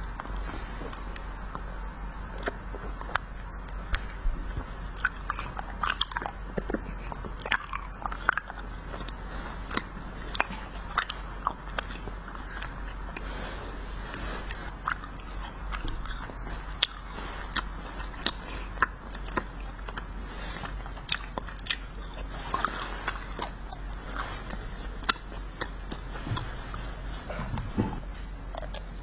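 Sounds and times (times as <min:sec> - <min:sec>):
steady low hum: 0:00.0 - 0:29.0
chewing wax candy crunches: 0:04.8 - 0:13.2, 0:14.4 - 0:26.5.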